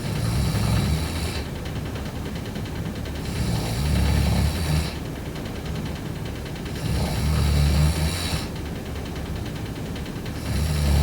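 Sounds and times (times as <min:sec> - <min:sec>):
sleeping breathing: 0:03.2 - 0:05.0, 0:06.8 - 0:08.6, 0:10.4 - 0:11.0
person snoring: 0:06.8 - 0:08.5, 0:10.4 - 0:11.0.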